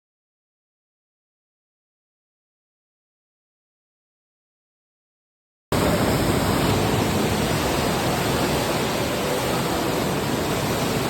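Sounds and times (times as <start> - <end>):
steady rushing noise: 5.7 - 11.0.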